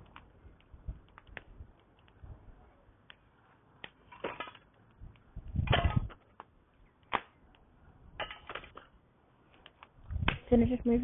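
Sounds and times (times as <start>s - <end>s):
campfire crackling and popping: 0.0s - 10.6s.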